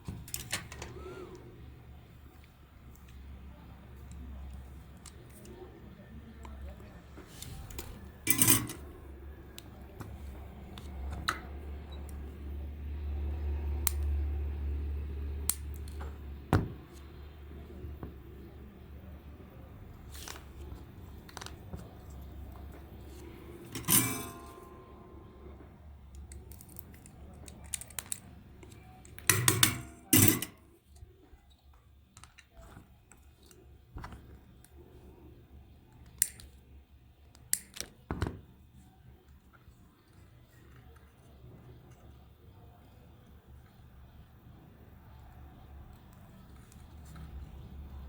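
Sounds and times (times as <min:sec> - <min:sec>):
tools clicking and tapping: 0:08.2 - 0:08.9, 0:23.6 - 0:24.7, 0:26.1 - 0:30.6
tools clattering: 0:08.3 - 0:08.9, 0:23.6 - 0:24.8, 0:29.3 - 0:30.6.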